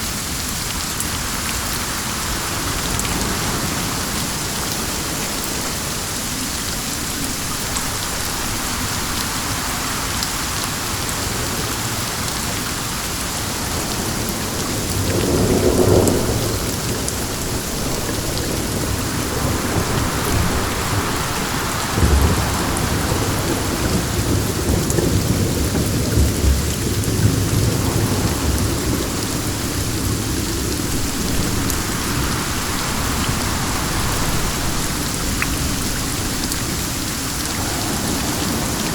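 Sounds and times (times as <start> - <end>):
steady rain falling: 0.0 - 38.9
distant thunder rumbling: 13.5 - 38.9.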